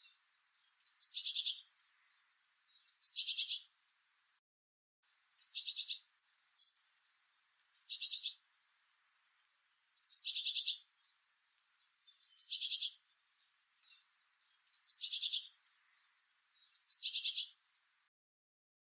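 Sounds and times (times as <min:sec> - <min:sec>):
blue tit singing trills: 0:00.0 - 0:03.8, 0:05.2 - 0:08.5, 0:09.7 - 0:11.2, 0:11.8 - 0:17.6.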